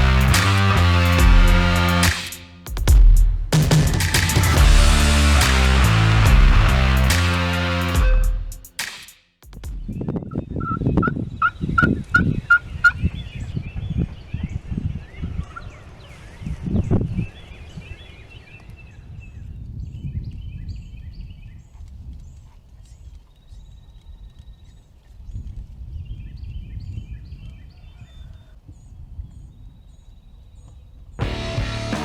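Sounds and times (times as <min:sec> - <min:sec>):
songbirds chirping: 0:10.0 - 0:31.2
wind rumble on microphone: 0:18.7 - 0:30.3.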